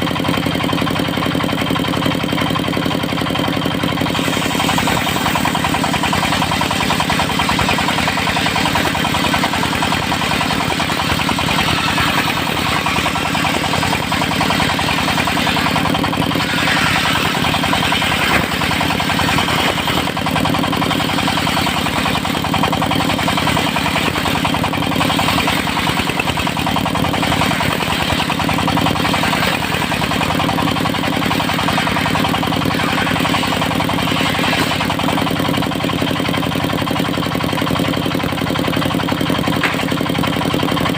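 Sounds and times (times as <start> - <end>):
sawmill engine running: 0.0 - 40.9
circular saw blade cutting wood: 3.2 - 37.6, 39.6 - 40.9.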